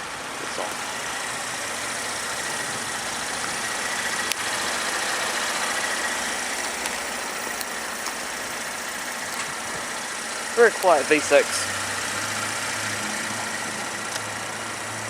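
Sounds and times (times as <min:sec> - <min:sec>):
car engine idling quietly: 0:00.0 - 0:15.0.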